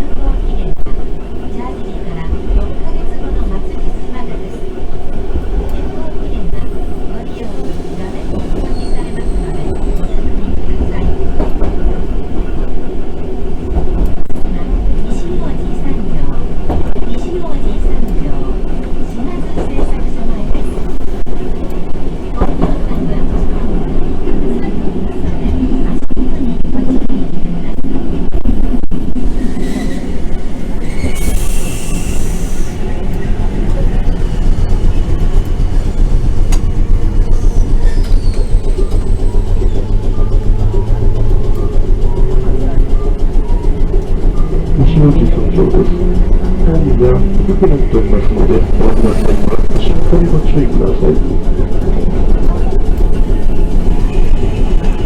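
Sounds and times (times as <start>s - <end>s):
tram wheels and motors rumbling: 0.0s - 55.0s
wheels clicking over track: 27.8s - 55.0s.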